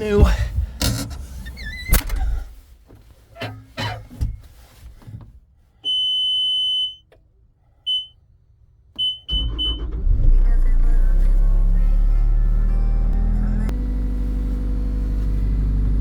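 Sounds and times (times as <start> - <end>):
warning beeper beeping: 5.9 - 7.0, 7.9 - 8.1, 9.0 - 9.9
diesel engine cranking and starting: 9.0 - 16.0.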